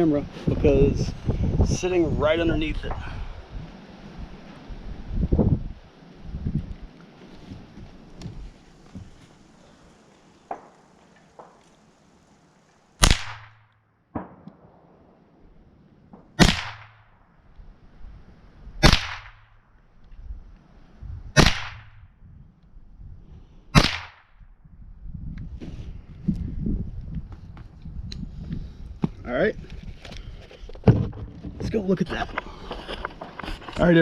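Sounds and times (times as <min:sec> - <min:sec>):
rifle shots cracking: 0:13.0 - 0:15.1, 0:16.1 - 0:17.2, 0:18.8 - 0:19.6, 0:21.4 - 0:22.0, 0:23.8 - 0:24.3.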